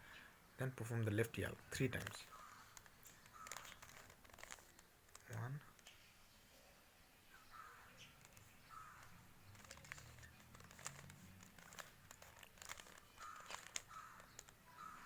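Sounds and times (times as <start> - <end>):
plastic puzzle cube clicking: 1.8 - 6.0, 8.0 - 15.0.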